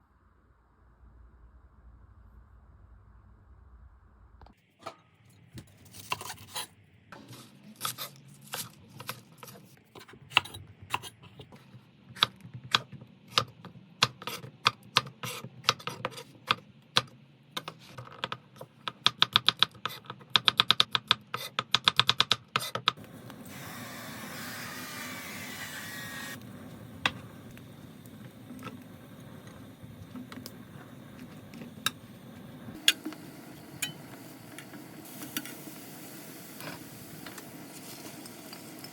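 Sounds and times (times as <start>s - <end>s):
low steady hum: 0.0s - 6.1s
hiss: 23.0s - 32.2s, 33.0s - 38.9s.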